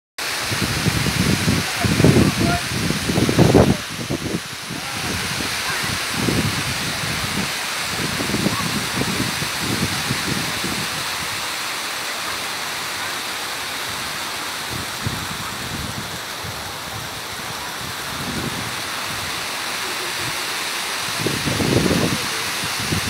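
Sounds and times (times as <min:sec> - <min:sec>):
water rushing over spillway: 0:00.2 - 0:23.0.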